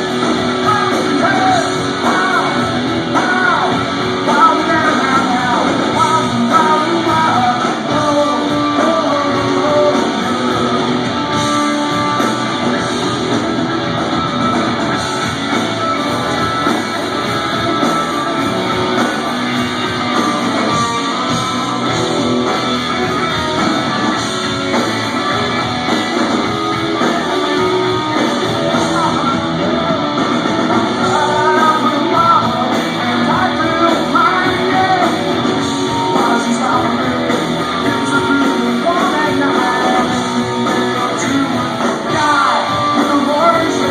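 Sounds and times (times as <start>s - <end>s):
electric guitar: 0.0s - 43.9s
live rock band playing: 0.0s - 43.9s
person singing: 0.6s - 10.7s, 30.8s - 43.9s.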